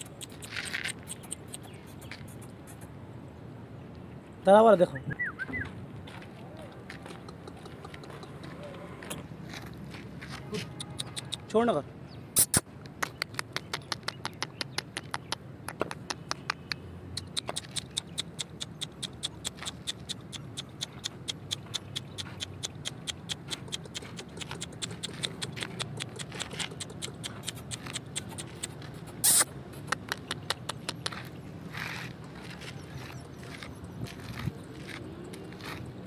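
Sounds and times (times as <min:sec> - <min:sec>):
scuffing noise: 0:31.1 - 0:35.9.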